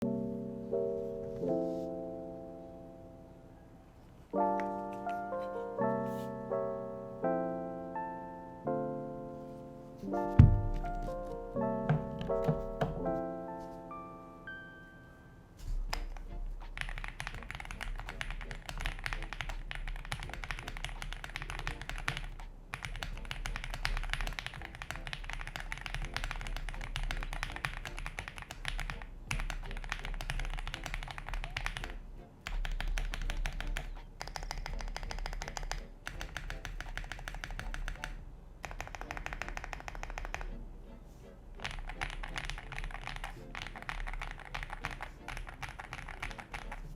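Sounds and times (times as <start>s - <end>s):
fast typing on mechanical keyboard: 15.8s - 40.6s, 41.6s - 46.9s.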